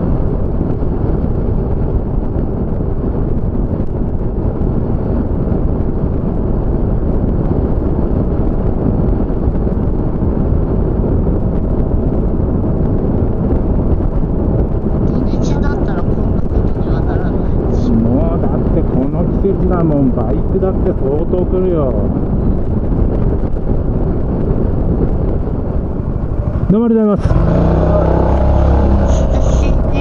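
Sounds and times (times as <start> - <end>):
wind buffeting microphone: 0.0 - 30.0.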